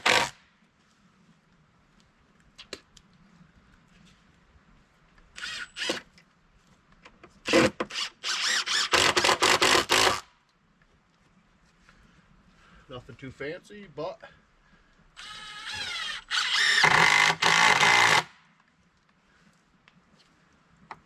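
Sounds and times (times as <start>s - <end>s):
power driver driving screws: 0.0s - 0.3s, 5.4s - 6.0s, 7.5s - 10.3s, 15.2s - 18.3s.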